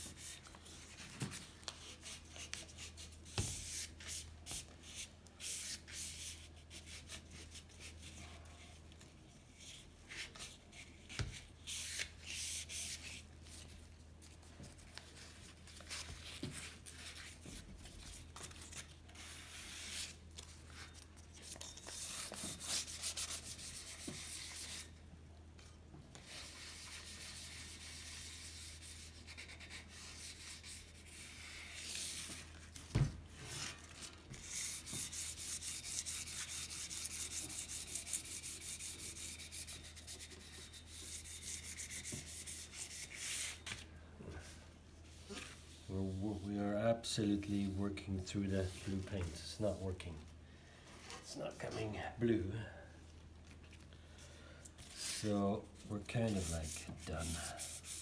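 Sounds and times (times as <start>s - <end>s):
sandpaper scraping metal: 34.4s - 43.6s, 56.1s - 58.0s.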